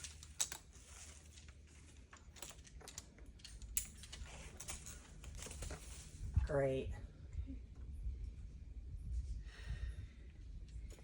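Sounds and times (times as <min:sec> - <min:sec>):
climbing rope and gear rustling: 0:00.0 - 0:06.6.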